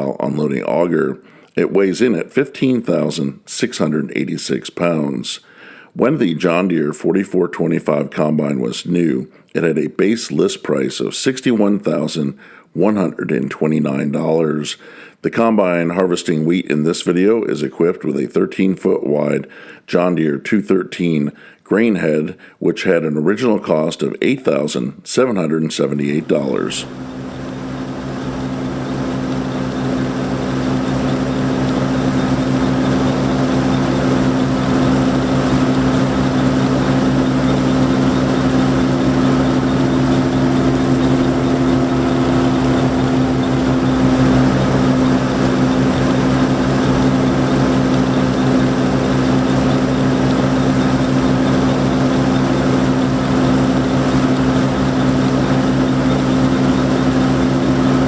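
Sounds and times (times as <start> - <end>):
combine diesel engine drone: 26.0 - 58.0.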